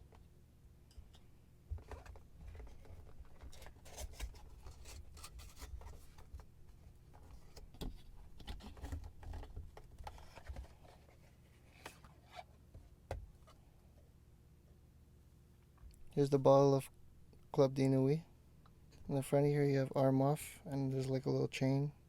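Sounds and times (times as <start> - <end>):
cardboard and paper rustling: 1.7 - 12.3.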